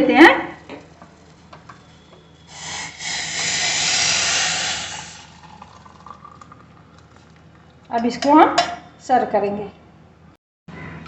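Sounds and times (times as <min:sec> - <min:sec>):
liquid pouring into a cup: 0:02.5 - 0:07.9.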